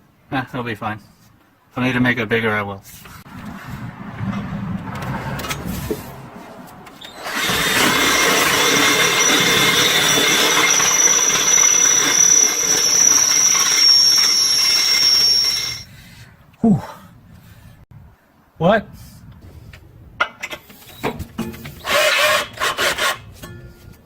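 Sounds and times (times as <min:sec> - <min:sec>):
power drill boring through metal: 0:07.0 - 0:15.9, 0:21.8 - 0:23.2.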